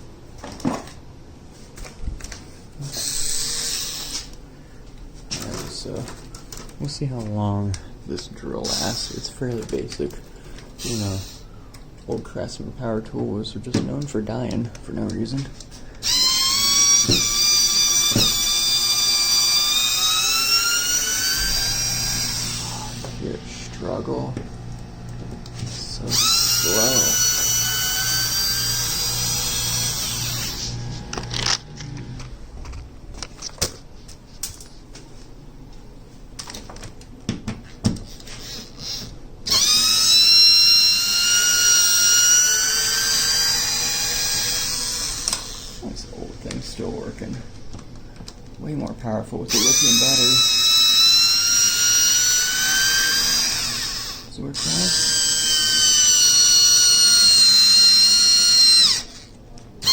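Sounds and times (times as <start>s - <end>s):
cordless drill motor whining: 2.9s - 4.4s, 10.8s - 11.4s, 16.0s - 32.2s, 38.4s - 45.8s, 49.5s - 59.9s.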